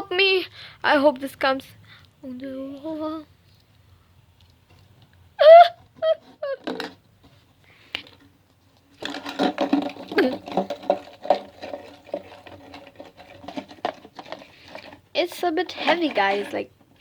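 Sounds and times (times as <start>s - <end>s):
clattering and rattling: 6.4s - 7.1s, 8.0s - 17.0s.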